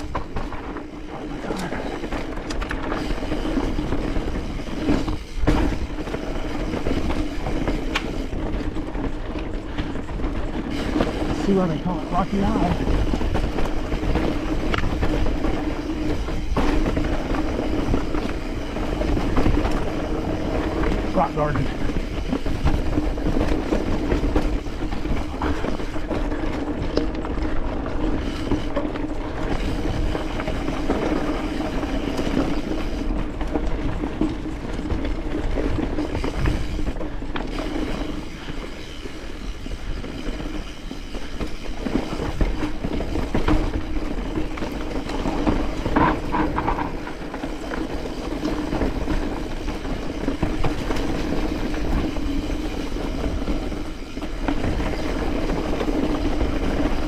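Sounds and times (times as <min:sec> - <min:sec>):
bike chain and frame chatter: 0:00.0 - 0:57.0.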